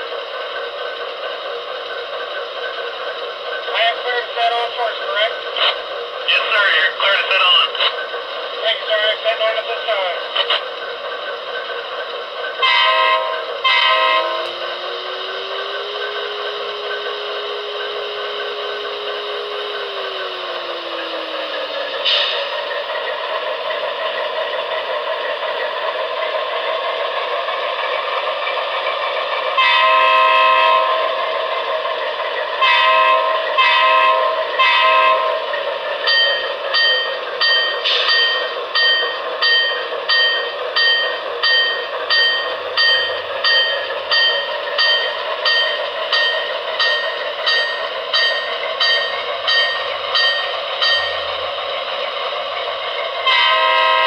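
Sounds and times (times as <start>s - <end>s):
model diesel engine sound: 0.0s - 54.0s
locomotive bell ringing: 12.4s - 25.8s, 29.6s - 31.2s, 32.6s - 54.0s
locomotive horn blasts: 12.6s - 19.9s, 29.6s - 31.0s, 32.6s - 35.5s, 53.2s - 54.0s.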